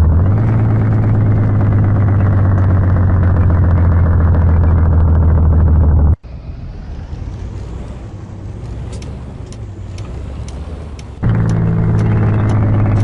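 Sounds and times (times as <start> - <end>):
diesel engine droning: 0.0 - 13.0
heavy truck rolling: 0.0 - 13.0
faint clicking: 8.6 - 13.0.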